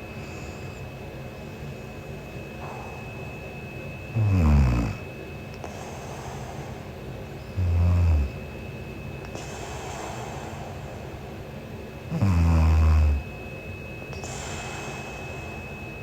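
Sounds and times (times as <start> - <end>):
woman snoring: 4.1 - 5.1, 7.5 - 8.5, 12.1 - 13.3.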